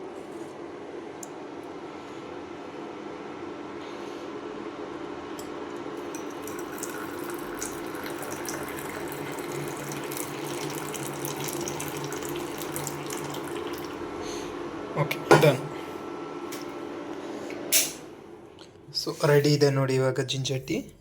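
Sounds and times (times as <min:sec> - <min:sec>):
background hum: 0:03.6 - 0:21.0
tea pouring into cup: 0:05.8 - 0:14.0.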